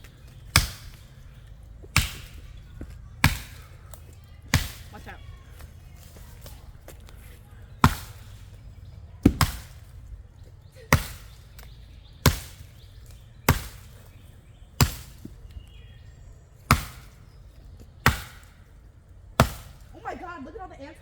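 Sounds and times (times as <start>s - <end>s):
blade chopping wood: 0.2s - 1.1s, 1.9s - 5.1s, 7.8s - 8.4s, 9.2s - 10.0s, 10.9s - 14.1s, 14.8s - 15.5s, 16.6s - 17.4s, 18.0s - 18.7s, 19.4s - 19.9s.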